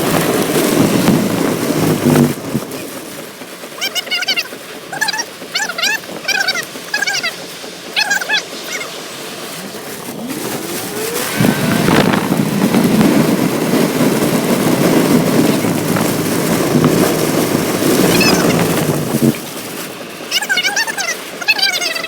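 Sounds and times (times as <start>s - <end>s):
road noise: 0.0s - 22.0s
vehicle engine pulling away: 6.6s - 20.3s.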